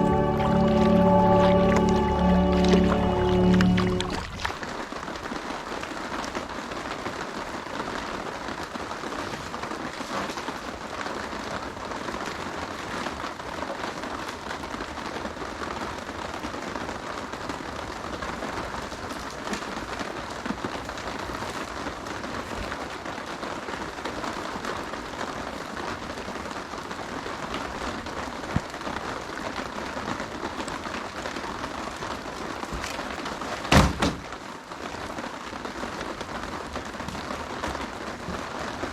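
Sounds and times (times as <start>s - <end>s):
heavy rain falling: 0.0s - 38.9s
short loud thump: 33.7s - 34.2s.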